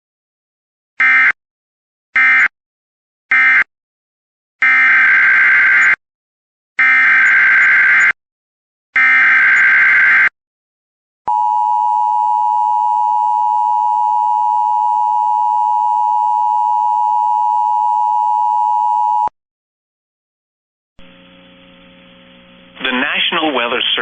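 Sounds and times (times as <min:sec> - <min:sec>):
steady high warning tone: 0:06.8 - 0:08.2, 0:09.0 - 0:10.3.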